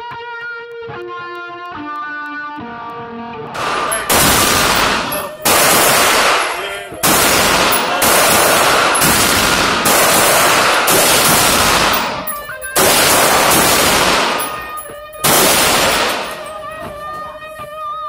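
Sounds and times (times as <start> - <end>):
gunshots with echoing decay: 3.6 - 17.2.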